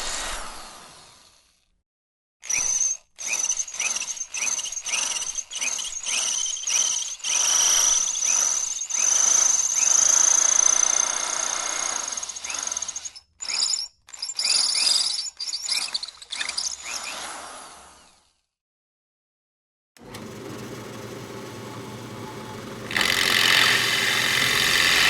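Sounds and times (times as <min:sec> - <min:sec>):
electric drill whining: 0:02.4 - 0:14.9, 0:21.6 - 0:25.0.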